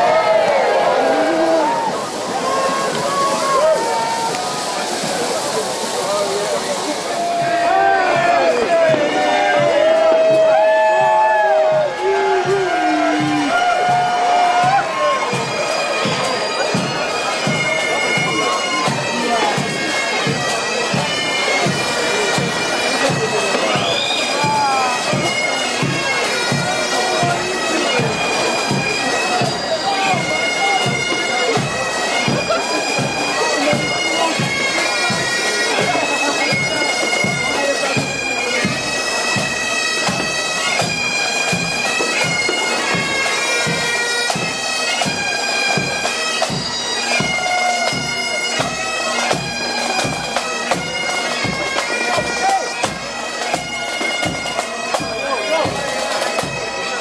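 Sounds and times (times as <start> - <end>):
bagpipes playing melody: 0.0 - 57.0
drumbeat: 7.2 - 16.2.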